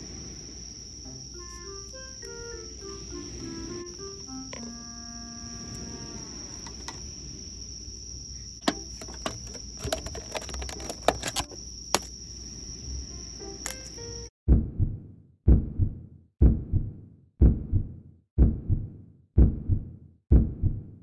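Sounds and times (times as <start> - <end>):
crickets trilling: 0.0 - 14.3
light clicks and knocks: 6.6 - 7.0, 8.6 - 12.1.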